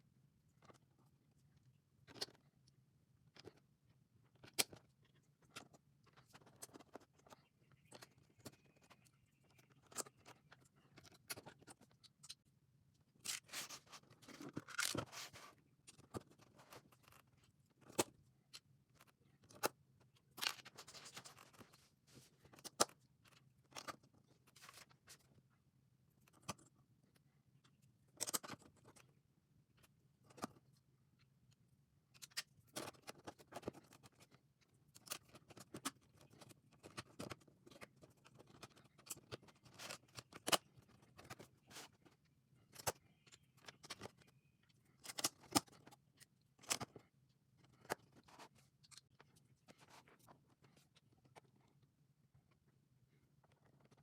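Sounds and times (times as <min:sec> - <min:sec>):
scraping and rustling of parts: 0:13.2 - 0:16.9.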